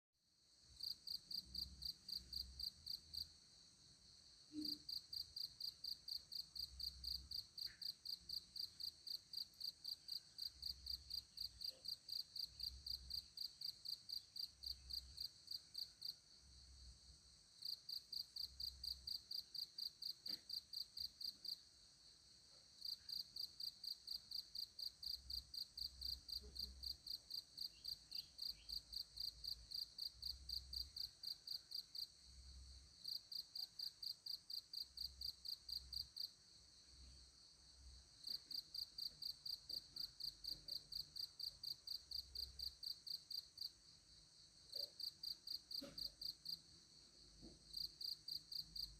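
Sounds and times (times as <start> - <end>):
high-pitched insect chirping: 22.8 - 32.1.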